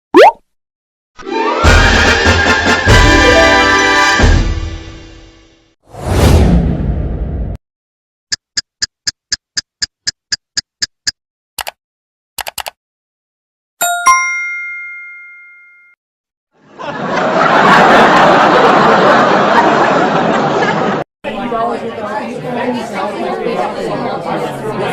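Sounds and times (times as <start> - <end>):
bell-like ding: 13.8 - 16.0
crowd talking: 16.8 - 24.9.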